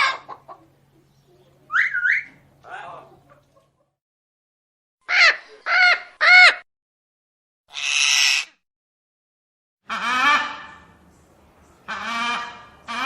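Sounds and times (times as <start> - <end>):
parrot squawking: 1.7 - 2.4, 7.7 - 8.6.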